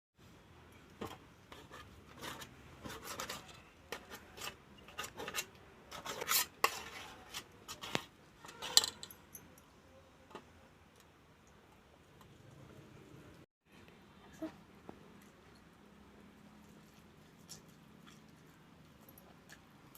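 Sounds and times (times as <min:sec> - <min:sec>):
cutlery scraping a dish: 0:01.0 - 0:09.1.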